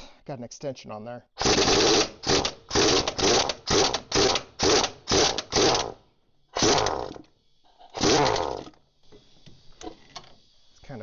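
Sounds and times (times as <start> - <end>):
impact wrench hammering bolts: 1.4 - 6.0.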